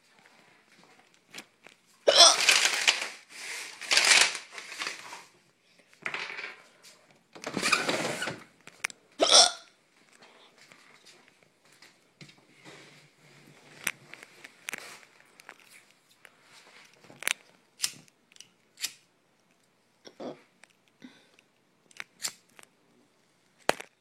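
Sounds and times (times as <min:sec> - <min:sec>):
person hiccuping: 0:02.1 - 0:02.4, 0:09.2 - 0:09.7.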